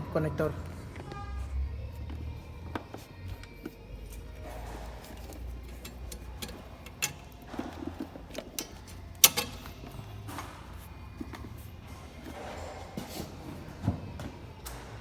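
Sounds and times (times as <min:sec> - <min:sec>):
tools and engine parts clicking: 0:02.7 - 0:12.6.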